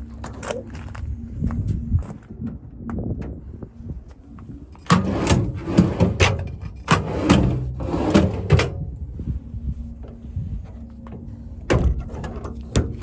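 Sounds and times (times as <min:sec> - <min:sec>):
metal latches clicking and rattling: 0:04.8 - 0:08.8.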